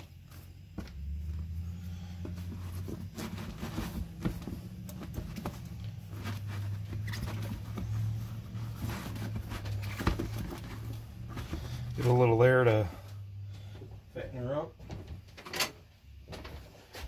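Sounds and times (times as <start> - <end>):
hands handling tire on rim: 0.1 - 12.9.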